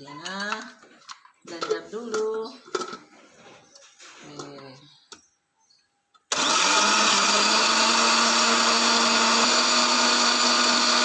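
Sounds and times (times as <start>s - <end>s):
electric blender running: 6.3s - 11.0s.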